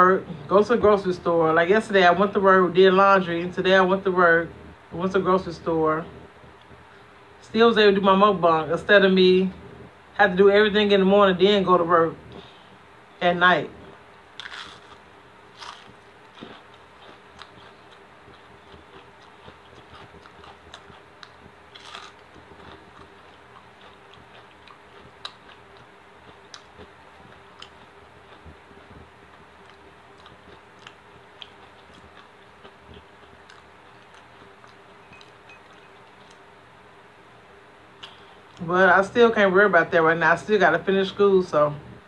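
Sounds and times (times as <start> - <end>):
person chewing food: 13.8 - 36.5.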